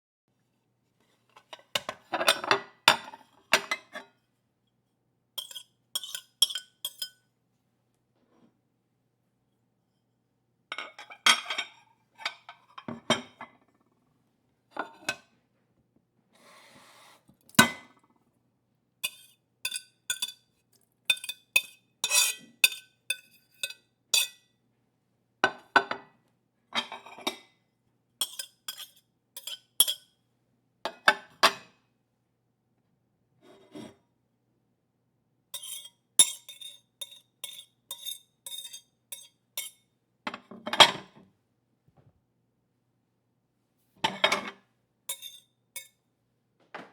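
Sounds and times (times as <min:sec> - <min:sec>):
plates clinking together: 0:05.4 - 0:07.2, 0:19.0 - 0:20.4, 0:21.1 - 0:24.4, 0:28.2 - 0:30.0, 0:45.1 - 0:45.9
faint scrape: 0:16.4 - 0:17.3.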